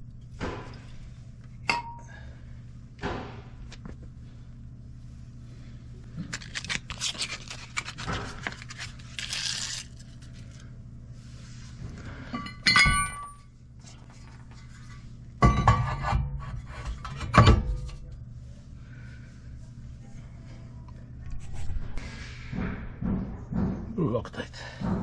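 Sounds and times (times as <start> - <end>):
steady low hum: 0.0 - 25.0
metal tools clinking and scraping: 12.3 - 13.5.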